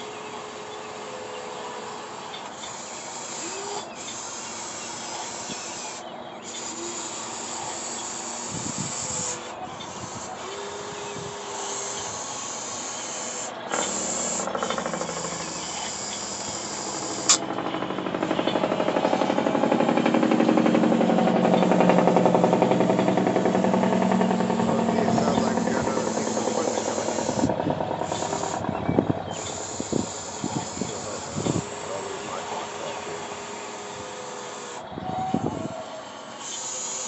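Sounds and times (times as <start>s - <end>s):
toy excavator motors whirring: 0.0s - 37.0s
sharp click: 13.7s - 19.5s.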